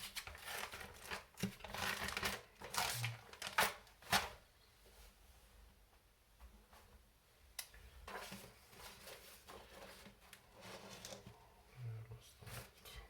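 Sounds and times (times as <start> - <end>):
rummaging through bags and boxes: 8.1 - 11.4.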